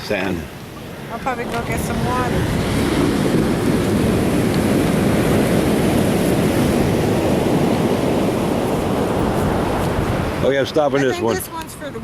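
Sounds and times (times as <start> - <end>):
surf breaking on a beach: 0.0 - 12.0
wind buffeting the microphone: 0.0 - 12.0.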